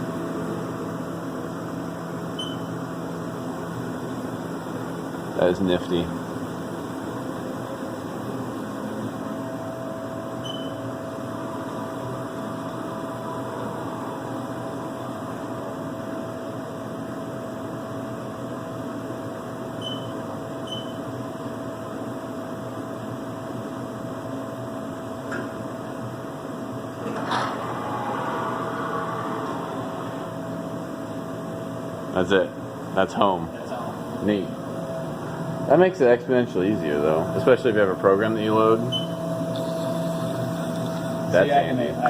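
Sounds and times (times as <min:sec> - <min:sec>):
steady whine: 0:00.0 - 0:17.8, 0:24.8 - 0:42.0
milling machine humming and hissing: 0:00.0 - 0:42.0
short high beeps: 0:02.4 - 0:02.7.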